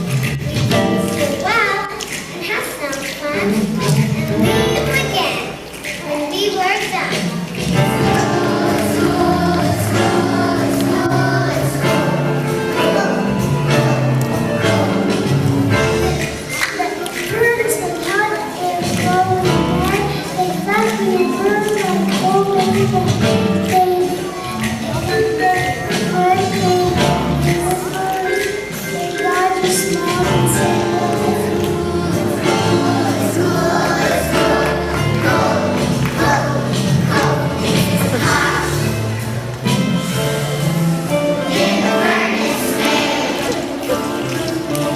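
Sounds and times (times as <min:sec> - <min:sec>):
choir singing with accompaniment: 0:07.2 - 0:16.7, 0:27.0 - 0:44.9
steady bass line: 0:30.4 - 0:41.4.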